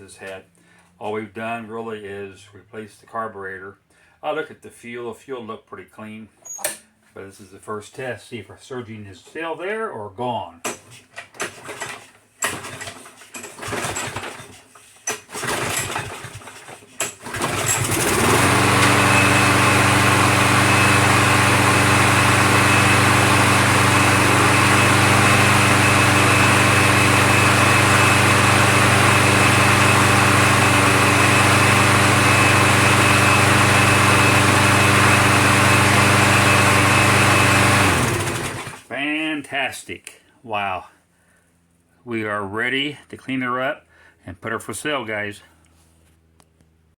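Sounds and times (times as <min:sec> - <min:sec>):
lawn mower engine starting: 0:10.6 - 0:39.0.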